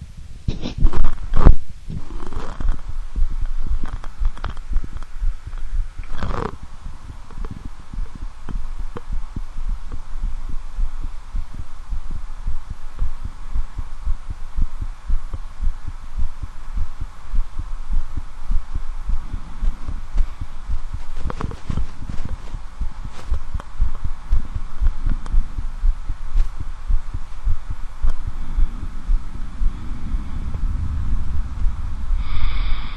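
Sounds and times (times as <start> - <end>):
faint steady hum: 0.0 - 32.9
heartbeat through stethoscope: 0.1 - 32.9
sharp rustle: 21.0 - 23.4.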